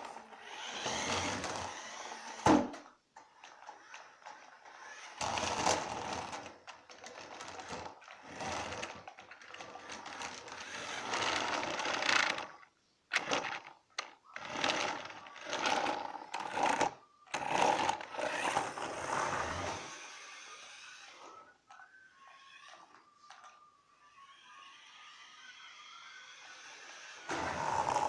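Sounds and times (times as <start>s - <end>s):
toy car electric motor whirring: 0.0s - 2.4s, 3.2s - 28.0s.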